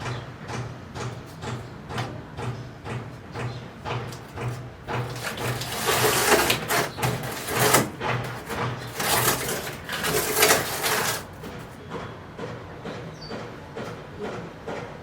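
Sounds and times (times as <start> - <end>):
plastic packaging rustling: 4.9 - 11.8.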